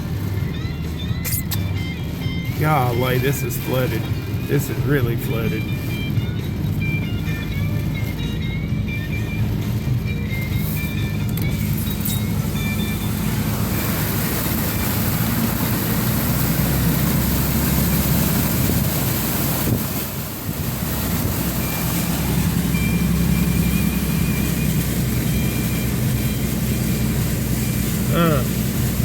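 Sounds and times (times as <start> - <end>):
car engine hum: 0.0 - 29.0
water rushing: 0.0 - 29.0
wind noise: 11.4 - 24.8.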